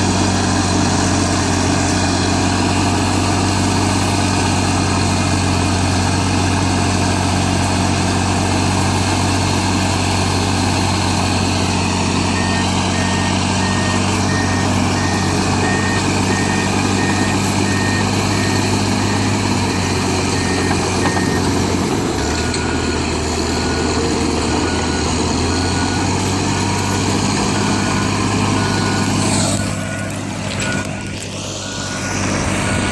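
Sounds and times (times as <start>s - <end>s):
bulldozer diesel engines running: 0.0s - 32.9s
lower-pitched backup alarm beeping: 12.2s - 19.5s, 20.3s - 21.6s, 22.2s - 32.9s
backup alarm beeping: 12.3s - 32.9s.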